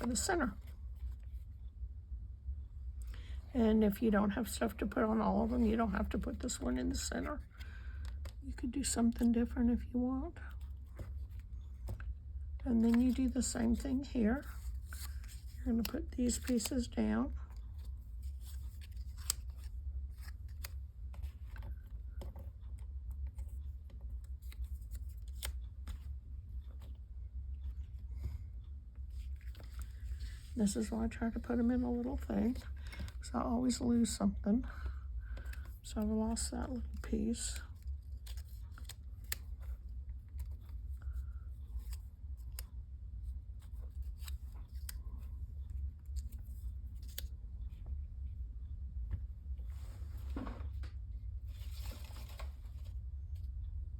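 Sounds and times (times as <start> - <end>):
low hum: 0.0 - 53.9
paper rustling: 12.7 - 27.0, 29.0 - 34.2, 35.2 - 45.3, 51.4 - 53.4.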